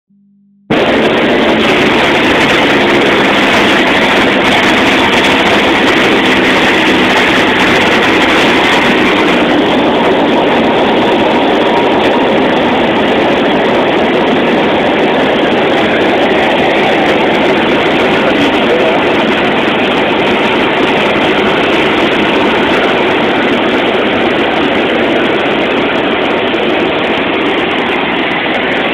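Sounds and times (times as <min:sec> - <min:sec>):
light aircraft engine droning: 0:00.7 - 0:28.9.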